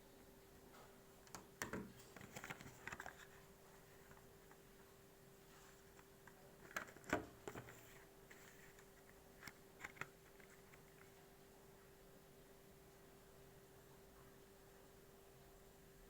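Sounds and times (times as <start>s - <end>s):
faint steady hum: 0.0s - 16.0s
packaging clicks and rustling: 1.3s - 4.3s, 5.8s - 11.2s.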